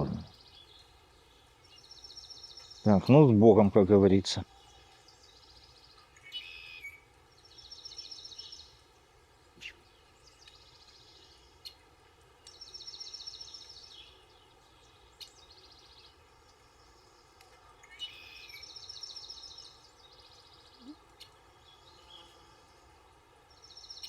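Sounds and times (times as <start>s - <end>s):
faint outdoor background noise: 0.0s - 24.0s
songbird trilling: 6.2s - 8.7s, 17.8s - 22.4s.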